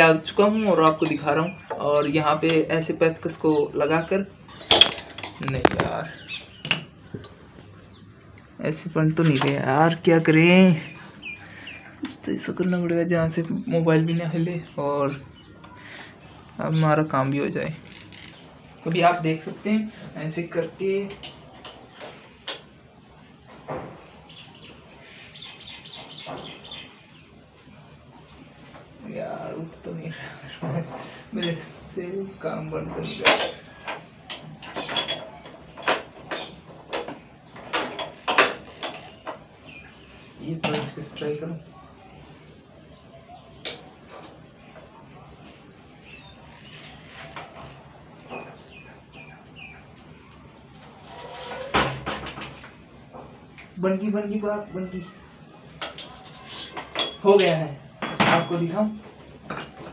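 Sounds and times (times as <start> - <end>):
metal tools scraping and knocking: 21.0 - 22.7, 32.9 - 39.5, 55.8 - 59.9.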